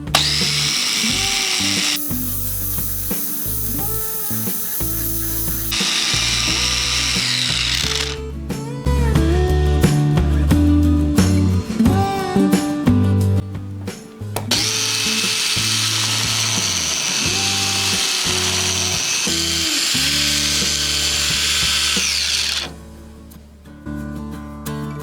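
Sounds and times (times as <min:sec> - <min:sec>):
electric hand mixer whining: 0:00.0 - 0:08.2, 0:14.4 - 0:22.7
strummed guitar music: 0:00.0 - 0:25.0.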